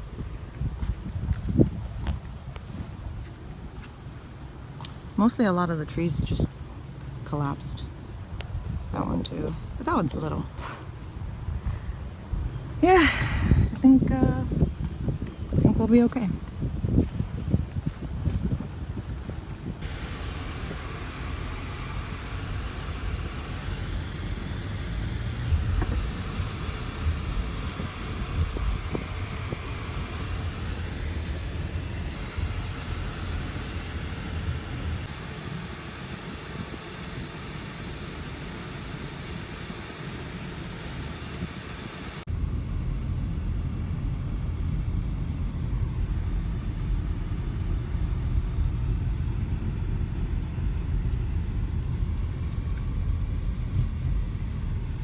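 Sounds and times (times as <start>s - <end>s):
wind buffeting microphone: 0.0s - 37.9s.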